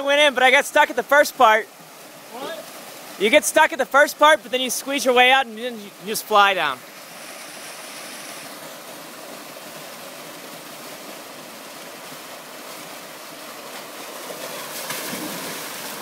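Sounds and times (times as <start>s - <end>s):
water splashing: 0.0s - 16.0s.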